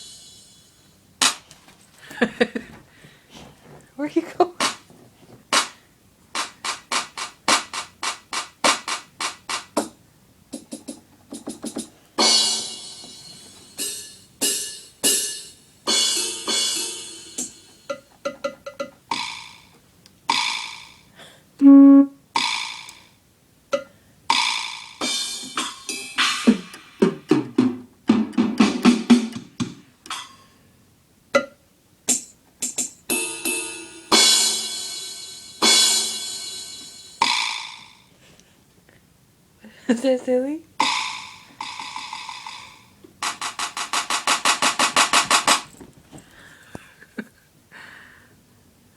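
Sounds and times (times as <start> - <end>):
falling electronic tone: 21.6 - 22.2
pitched electronic blips: 21.6 - 22.2
keyboard drum strikes: 24.4 - 30.3, 40.8 - 42.6, 43.2 - 45.7.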